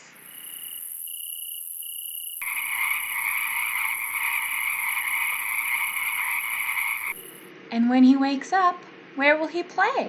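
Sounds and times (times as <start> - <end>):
crickets chirping: 0.0 - 7.5
frogs croaking: 0.1 - 7.5.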